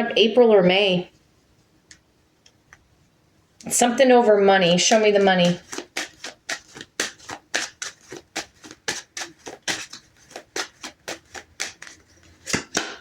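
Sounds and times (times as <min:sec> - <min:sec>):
cards being shuffled: 0:04.9 - 0:12.8.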